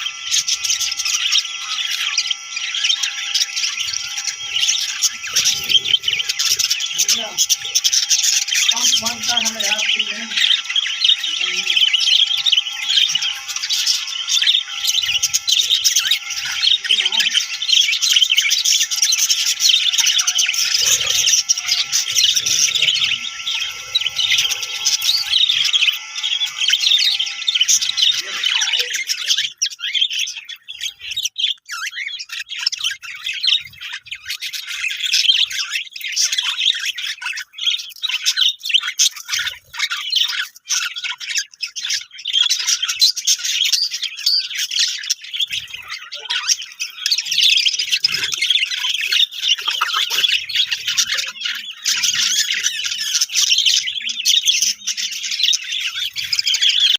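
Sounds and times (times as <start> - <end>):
steady hum: 0.0 - 29.0
budgerigars chirping and chattering: 0.0 - 56.9.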